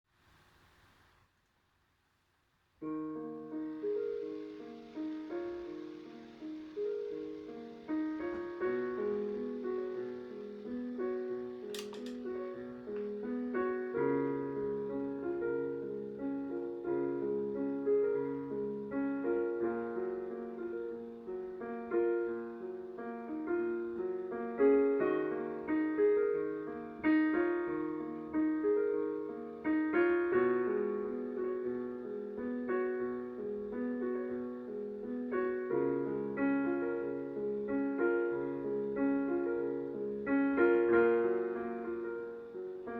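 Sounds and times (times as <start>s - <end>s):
slow solo piano: 2.8s - 42.9s
sharp click: 11.7s - 12.3s.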